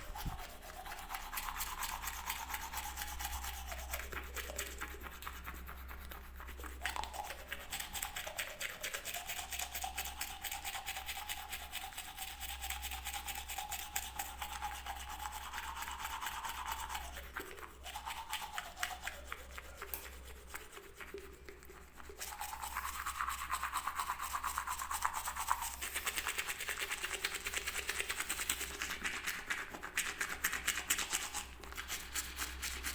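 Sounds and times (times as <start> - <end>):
toothbrush scrubbing: 0.0 - 32.9.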